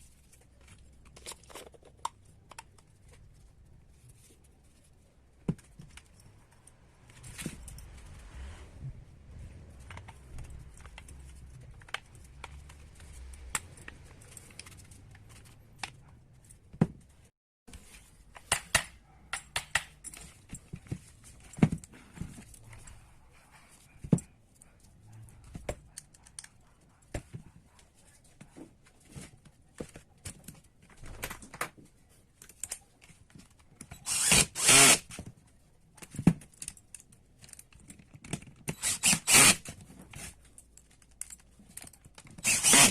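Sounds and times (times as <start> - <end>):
metal parts and tools handled: 0.0 - 4.9.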